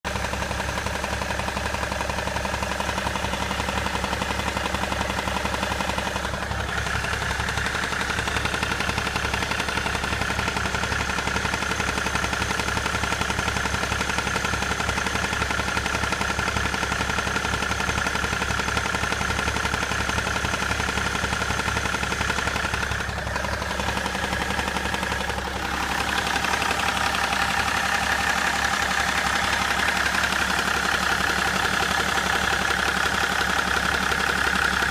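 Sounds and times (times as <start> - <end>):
diesel engine idling: 0.0 - 34.9
repetitive engine knock: 0.0 - 34.9.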